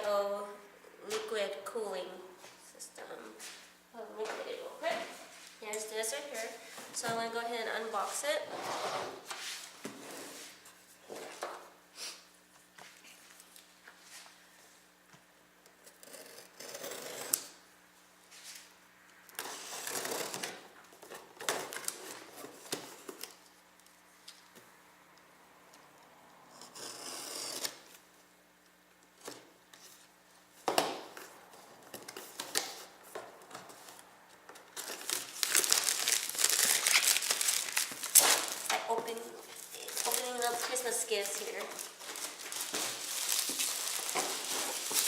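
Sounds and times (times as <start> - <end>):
packaging tearing and rustling: 34.7 - 45.0.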